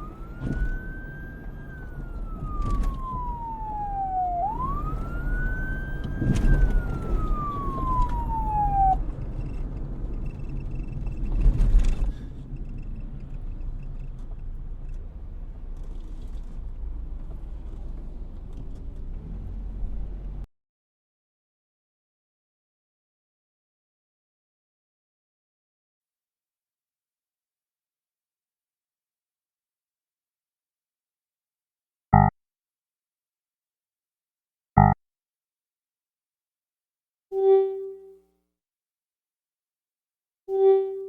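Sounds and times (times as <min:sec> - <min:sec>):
emergency vehicle siren wailing: 0:00.0 - 0:11.2
low rumble of traffic: 0:00.0 - 0:20.5.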